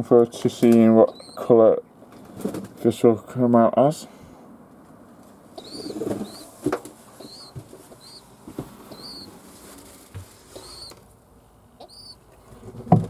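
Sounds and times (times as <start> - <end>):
dove peeping: 0.7 - 2.8, 5.4 - 11.1, 11.8 - 12.8
wings flapping: 2.1 - 2.8, 5.6 - 11.0.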